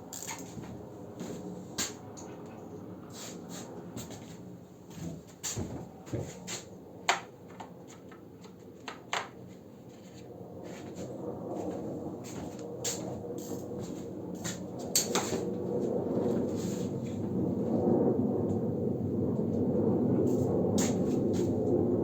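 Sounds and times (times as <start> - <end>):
hand tools clicking and knocking: 0.1 - 0.5.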